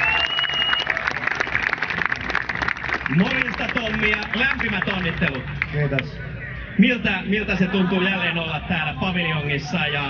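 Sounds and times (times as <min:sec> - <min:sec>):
crowd applauding: 0:00.0 - 0:05.7.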